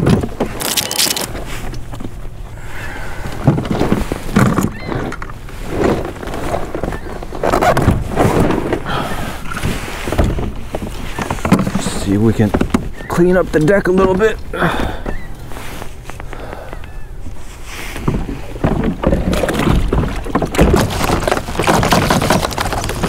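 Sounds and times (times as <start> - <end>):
fish thumping: 18.0 - 23.0.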